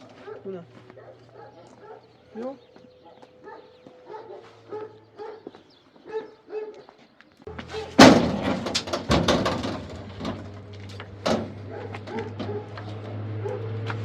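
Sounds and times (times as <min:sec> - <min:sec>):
knocks and clatter: 0:07.9 - 0:14.0
loud slam: 0:08.0 - 0:10.0.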